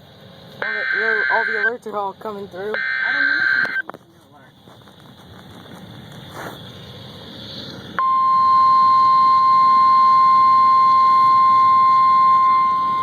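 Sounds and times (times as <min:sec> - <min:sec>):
steady alarm tone: 0:00.6 - 0:02.0, 0:02.7 - 0:03.8, 0:08.0 - 0:13.0.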